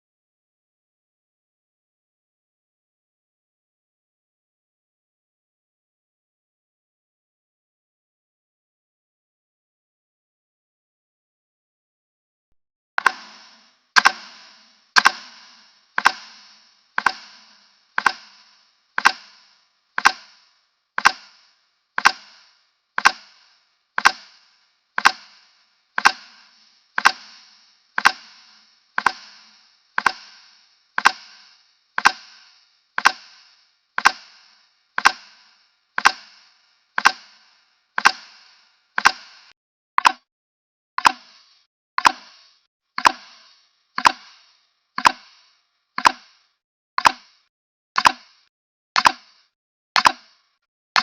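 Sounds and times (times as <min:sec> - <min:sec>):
woody timer ticks: 0:13.0 - 0:40.3, 0:41.0 - 0:51.0.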